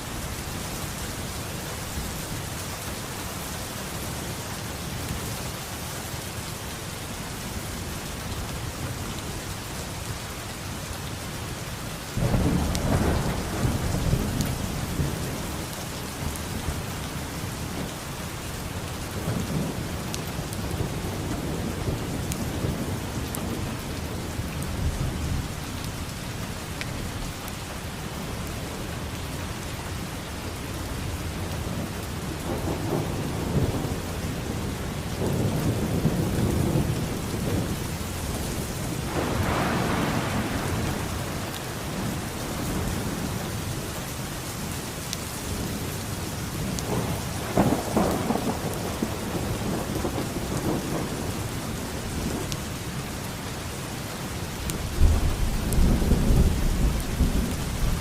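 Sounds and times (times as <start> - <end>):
heavy rain falling: 0.0 - 58.0
thunder rumbling: 31.4 - 43.6, 46.6 - 52.6, 54.7 - 58.0.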